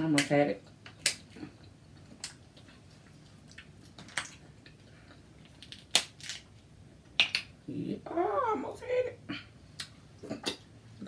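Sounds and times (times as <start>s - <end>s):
shellfish shells cracking: 5.4s - 6.6s.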